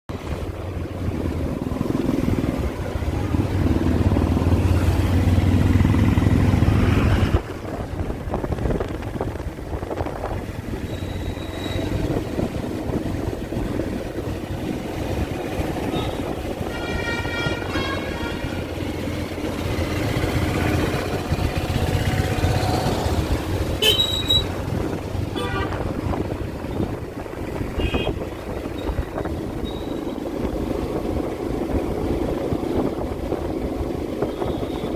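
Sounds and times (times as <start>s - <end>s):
loud low engine rumble: 0.1s - 34.9s
vehicle engines: 0.1s - 34.9s
car horn toots: 15.9s - 18.6s, 23.8s - 24.5s, 25.4s - 25.8s, 27.8s - 28.2s.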